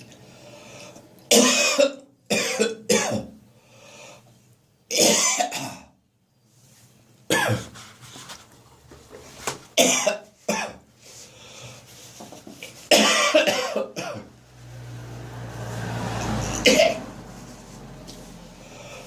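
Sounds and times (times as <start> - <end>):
person coughing hard: 1.3 - 3.4, 4.9 - 6.0, 7.3 - 7.8, 9.8 - 10.8, 12.9 - 14.3, 16.5 - 17.1.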